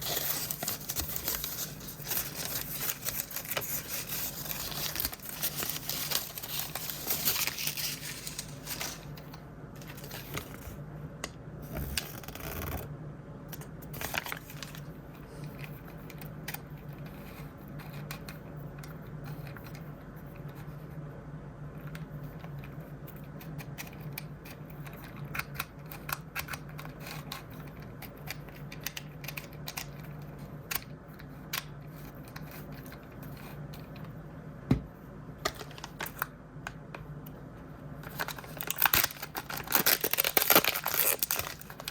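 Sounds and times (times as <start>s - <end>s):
plastic packaging crinkling: 0.0s - 10.8s, 13.9s - 14.9s, 35.4s - 36.3s, 38.0s - 41.9s.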